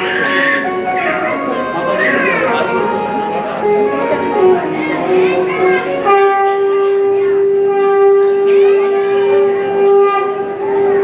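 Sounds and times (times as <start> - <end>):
faint singing voices: 0.0 - 6.8
conch shell blown: 0.0 - 11.0.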